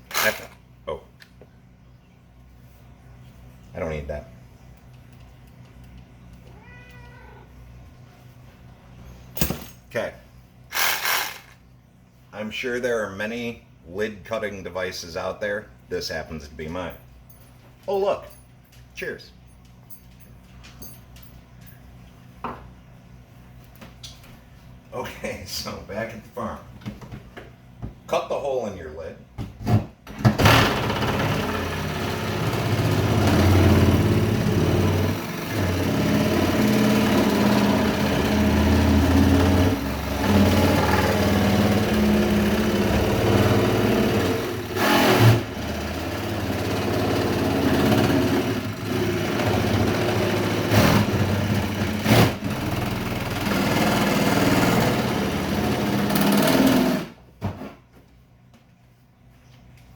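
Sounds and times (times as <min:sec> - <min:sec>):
power tool cutting plastic: 0:00.0 - 0:00.6, 0:10.7 - 0:11.6, 0:30.4 - 0:57.2.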